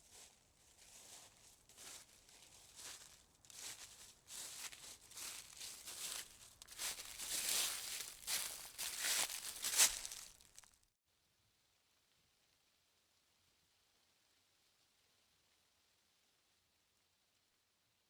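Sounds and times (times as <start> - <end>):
rustling and crinkling: 0.1 - 10.7.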